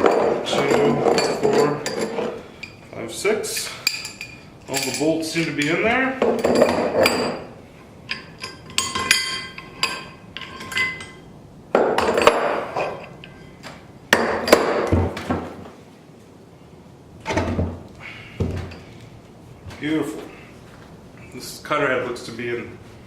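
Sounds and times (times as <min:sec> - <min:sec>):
steel parts clinking together: 0:00.0 - 0:02.8, 0:03.5 - 0:07.5, 0:08.1 - 0:11.3
short metallic rings: 0:08.1 - 0:11.3.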